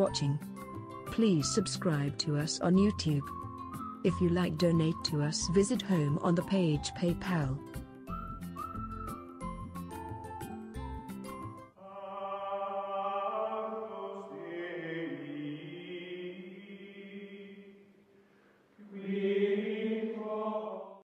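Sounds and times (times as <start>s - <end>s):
choir-like held chords: 11.8s - 17.8s, 18.8s - 21.0s.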